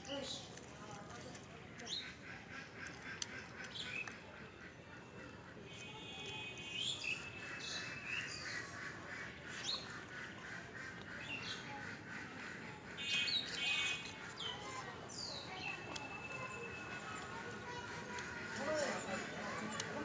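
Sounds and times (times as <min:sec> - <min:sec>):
birds chirping and squawking: 0:07.0 - 0:20.0.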